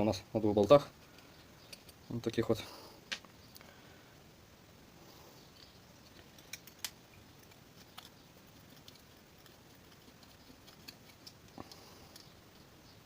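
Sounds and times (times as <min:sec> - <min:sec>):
small metal parts clicking: 0:01.1 - 0:02.0, 0:05.5 - 0:12.7.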